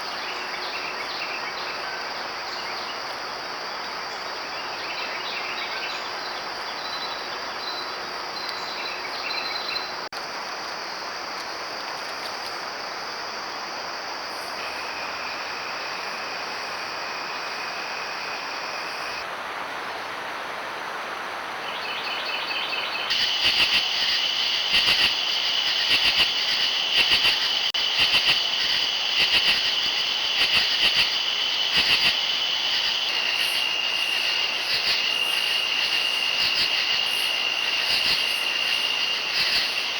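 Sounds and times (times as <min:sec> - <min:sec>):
constant hiss: 0:00.0 - 0:39.9
insects trilling: 0:21.7 - 0:39.9.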